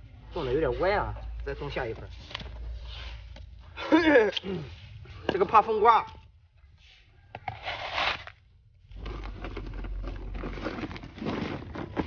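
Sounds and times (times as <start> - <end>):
potting mix poured and scraped: 6.8 - 12.0.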